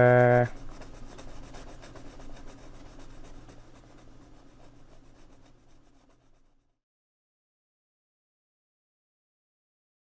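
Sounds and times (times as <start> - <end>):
pencil scratching on paper: 0.0 - 6.8.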